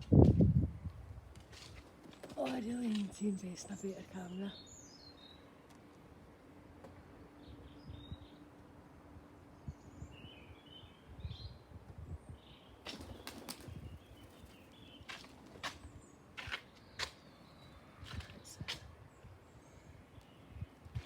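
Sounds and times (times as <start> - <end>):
pigeon wings flapping: 12.9 - 13.8.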